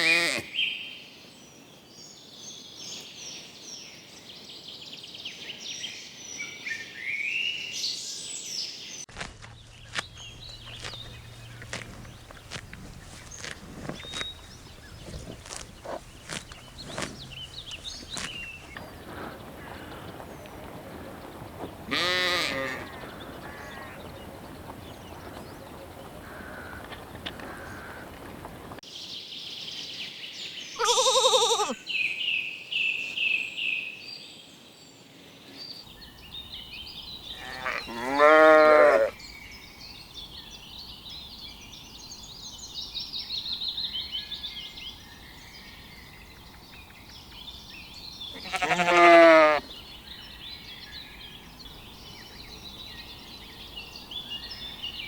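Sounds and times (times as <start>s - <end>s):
lambs bleating: 0.0s - 0.5s, 21.9s - 22.9s, 30.8s - 31.8s, 37.4s - 39.1s, 48.4s - 49.6s.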